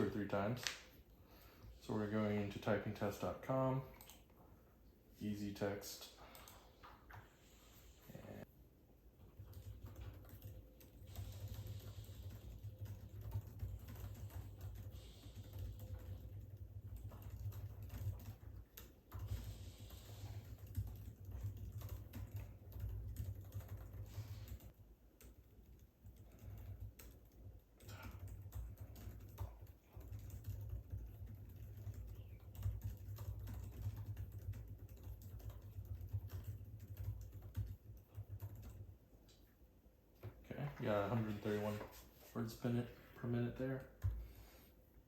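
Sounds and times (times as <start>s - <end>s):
laptop keyboard typing: 9.2s - 39.0s.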